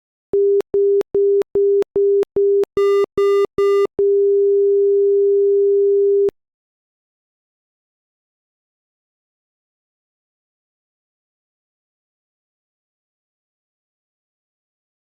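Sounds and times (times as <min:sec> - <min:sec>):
short low beeps: 0:00.4 - 0:04.4.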